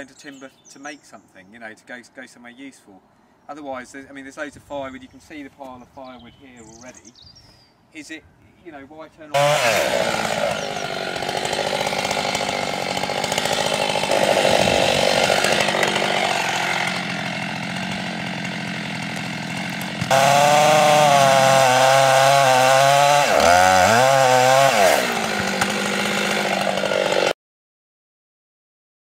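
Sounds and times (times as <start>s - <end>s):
chainsaw cutting log: 9.3s - 27.4s.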